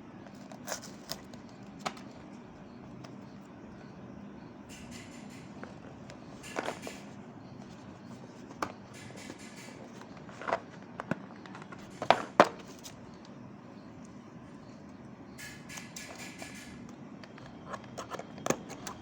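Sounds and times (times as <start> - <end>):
packaging clicks and knocks: 4.8 - 7.1.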